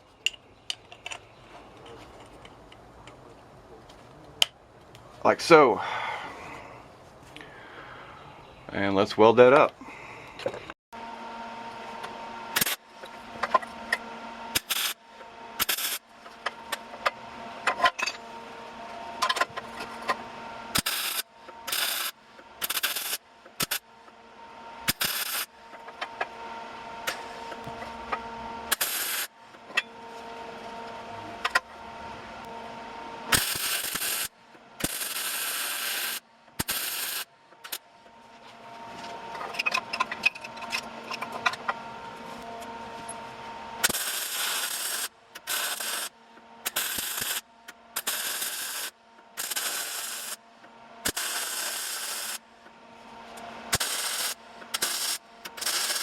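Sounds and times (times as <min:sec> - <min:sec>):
steady hum: 0:00.0 - 0:56.0
electric welding crackling: 0:12.6 - 0:12.8, 0:14.5 - 0:15.0, 0:15.6 - 0:16.0, 0:20.7 - 0:23.8, 0:24.8 - 0:25.5, 0:28.7 - 0:29.3, 0:33.3 - 0:37.8, 0:43.8 - 0:47.4, 0:48.0 - 0:50.4, 0:51.0 - 0:52.4, 0:53.7 - 0:56.0.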